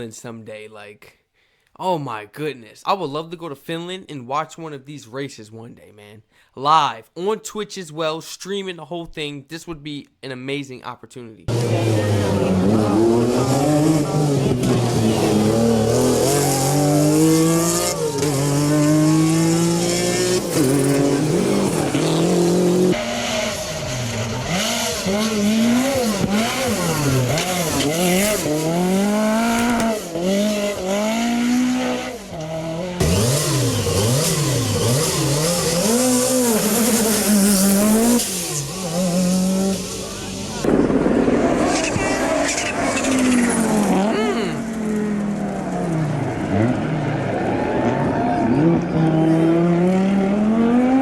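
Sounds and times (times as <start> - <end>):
rally car engines revving: 11.5 - 51.0.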